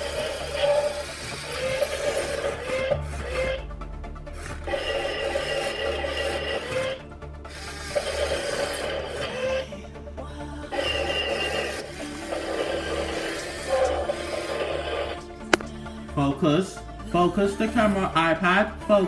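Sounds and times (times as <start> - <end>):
toy electric motor whirring: 0.0 - 3.6, 4.4 - 9.6, 10.8 - 15.2.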